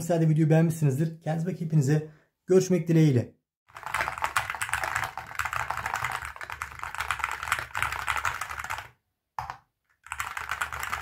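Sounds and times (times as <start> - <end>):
fast keyboard typing: 3.7 - 11.0.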